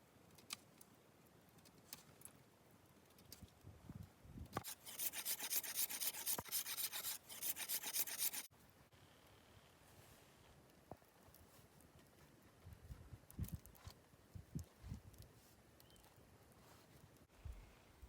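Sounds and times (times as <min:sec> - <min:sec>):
rapid rasping scrapes: 0:04.6 - 0:08.5.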